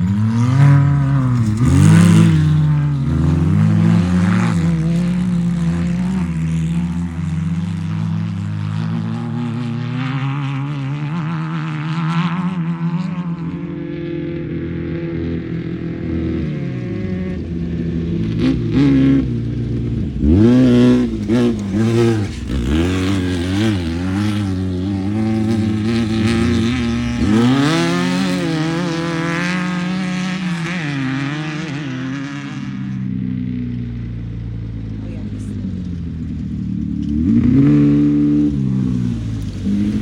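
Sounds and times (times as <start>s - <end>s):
engine revving hard: 0.0s - 7.2s, 20.2s - 32.3s.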